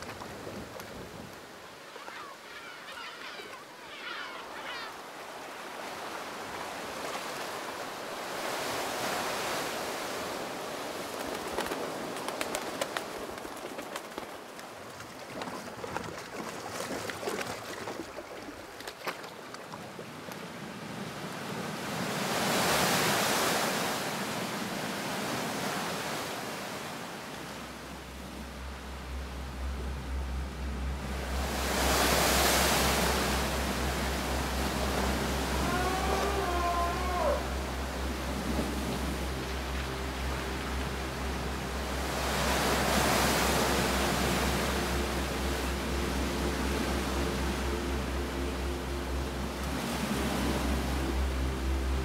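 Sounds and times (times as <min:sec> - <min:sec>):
ocean waves washing ashore: 0:00.0 - 0:52.0
birds chirping: 0:01.8 - 0:05.1
low steady hum: 0:27.0 - 0:52.0.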